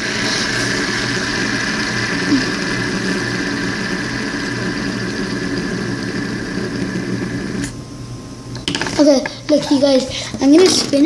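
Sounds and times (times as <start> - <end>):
fidget spinner whirring: 0.0 - 7.8.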